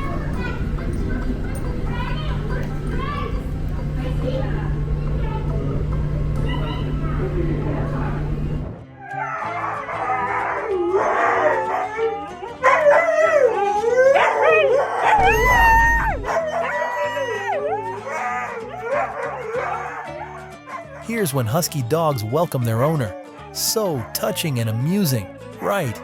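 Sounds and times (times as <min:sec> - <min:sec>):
background music: 0:00.0 - 0:26.0
dog howling: 0:09.0 - 0:21.1, 0:22.1 - 0:26.0.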